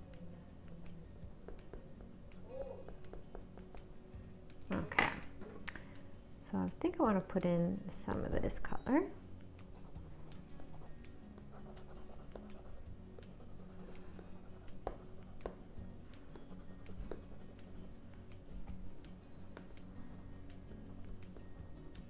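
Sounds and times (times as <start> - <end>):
soft background music: 0.0 - 22.0
crayon scratching on paper: 2.9 - 4.0, 9.7 - 17.9.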